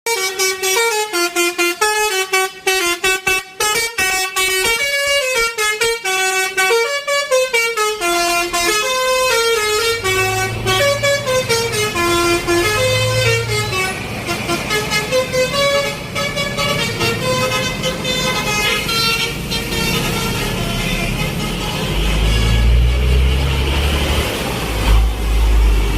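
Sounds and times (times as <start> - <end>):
multi-tone musical bus horn: 0.1 - 25.9
low engine rumble: 8.3 - 25.9.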